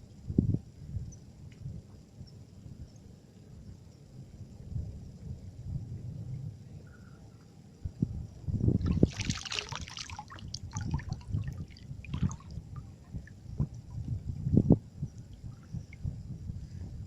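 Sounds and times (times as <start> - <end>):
water splashing and sloshing: 8.6 - 14.2.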